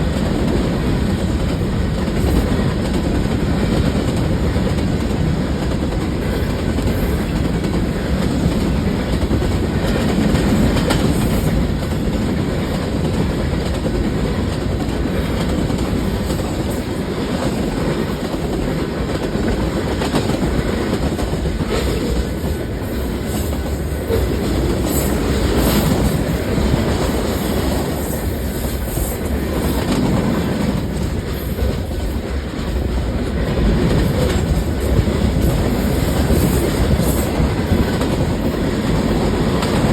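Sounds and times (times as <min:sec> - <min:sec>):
train wheels clacking over rails: 0:00.0 - 0:39.9.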